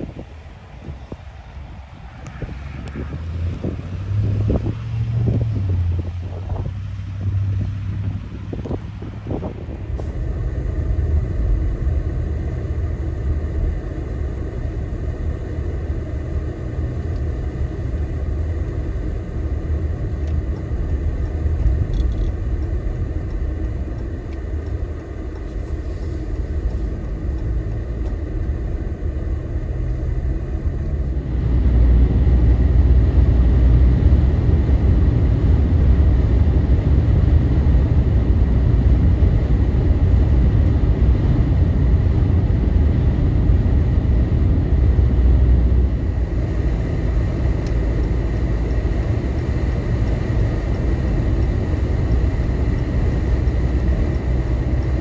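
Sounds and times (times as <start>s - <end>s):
blizzard wind: 0.0s - 55.0s
vehicle road and engine noise: 0.0s - 55.0s.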